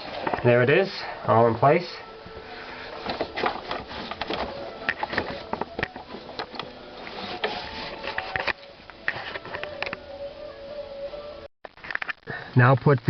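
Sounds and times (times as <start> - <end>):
clicks and rattles of cable fittings: 11.8 - 13.0.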